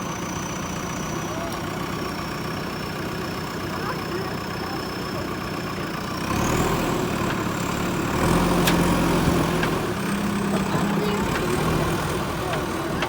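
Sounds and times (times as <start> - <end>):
diesel engine revving with whine: 0.0 - 13.0.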